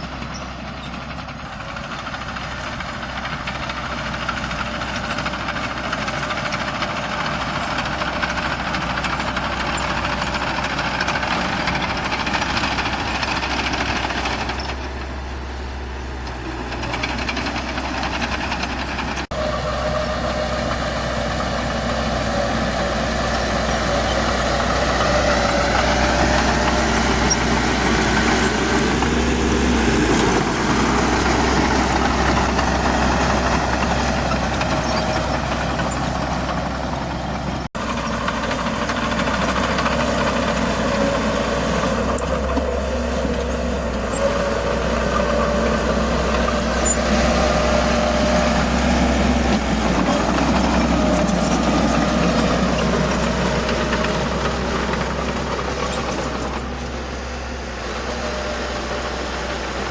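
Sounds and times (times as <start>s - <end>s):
heavy diesel engines running: 0.0s - 59.9s.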